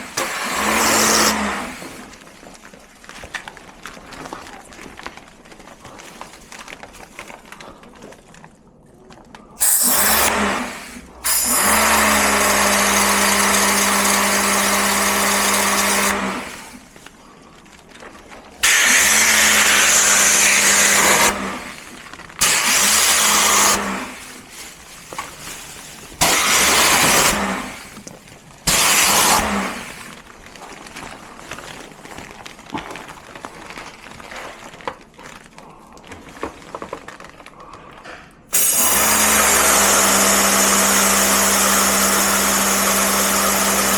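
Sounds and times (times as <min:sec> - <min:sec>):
pressure washer motor hum: 0:00.0 - 0:02.2, 0:09.6 - 0:16.9, 0:18.6 - 0:24.5, 0:26.2 - 0:30.2, 0:38.5 - 0:43.9
hiss of water spray: 0:09.6 - 0:16.8, 0:28.7 - 0:30.1, 0:38.5 - 0:43.9.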